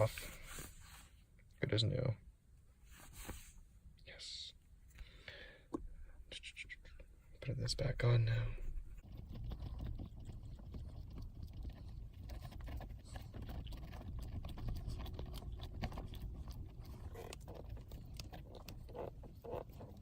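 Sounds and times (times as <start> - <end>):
small clicks and scrapes: 9.0 - 20.0.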